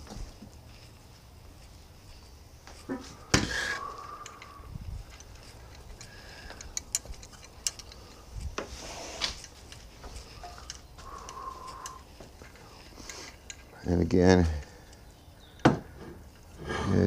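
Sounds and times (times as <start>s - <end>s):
metallic clicks of brackets and bolts: 3.4s - 8.2s, 9.2s - 15.7s.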